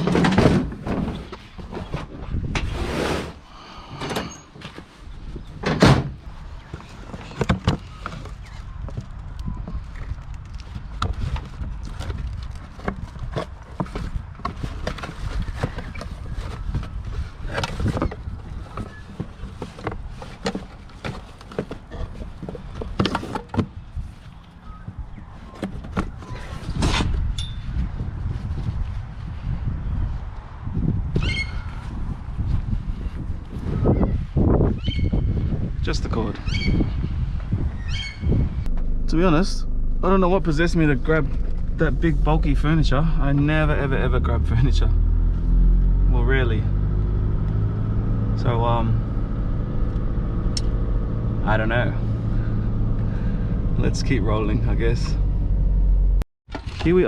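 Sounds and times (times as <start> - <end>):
knocks and clunks: 0.0 - 2.7, 5.5 - 9.8
steady low rumble: 31.9 - 56.2.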